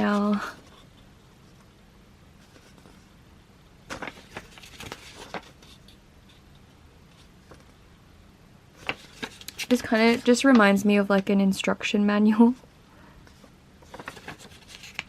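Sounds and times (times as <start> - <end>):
paper pages rustling and tapping: 2.4 - 3.1, 3.9 - 6.5, 7.1 - 7.8, 8.8 - 11.3, 13.3 - 15.0.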